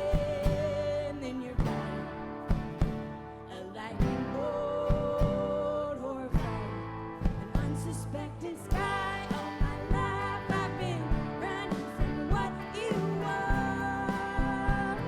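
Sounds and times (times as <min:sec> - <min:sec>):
live rock band playing: 0:00.0 - 0:15.0
sustained guitars: 0:00.0 - 0:15.0
drums hitting: 0:01.6 - 0:03.3, 0:06.4 - 0:07.9, 0:08.7 - 0:15.0.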